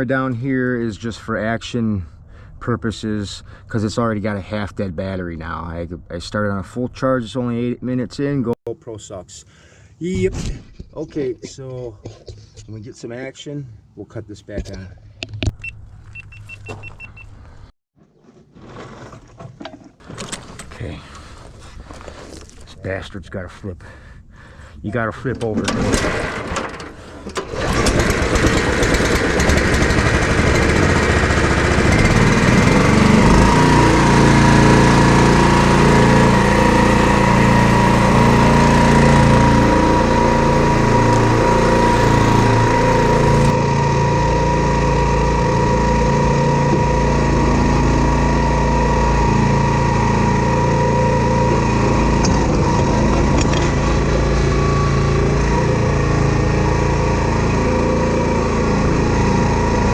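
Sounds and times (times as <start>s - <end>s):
engine running under load: 25.6s - 59.9s.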